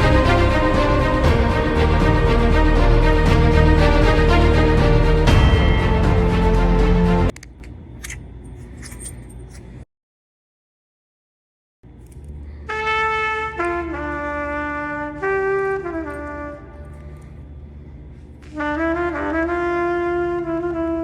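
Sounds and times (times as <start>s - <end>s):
trumpet playing long held notes: 0.0s - 7.3s, 12.7s - 17.4s, 18.5s - 21.0s.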